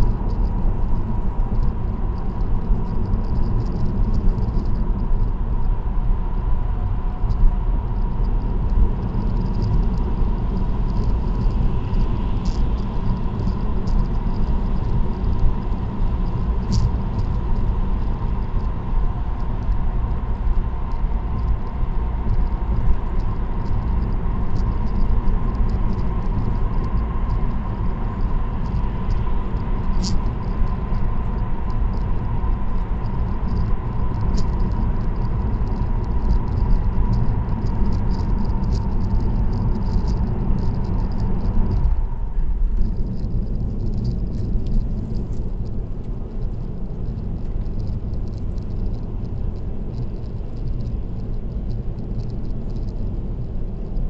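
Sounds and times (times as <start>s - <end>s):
car tyre and engine rumble: 0.0s - 54.0s
constant high hum: 0.0s - 54.0s
light ticks: 10.9s - 18.7s, 28.1s - 42.0s, 42.8s - 54.0s.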